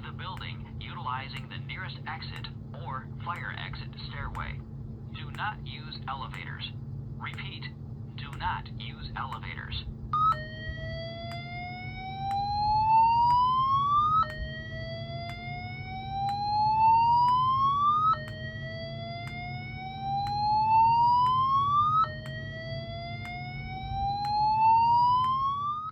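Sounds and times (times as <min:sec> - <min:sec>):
fire alarm whoop tone: 0:10.2 - 0:25.9.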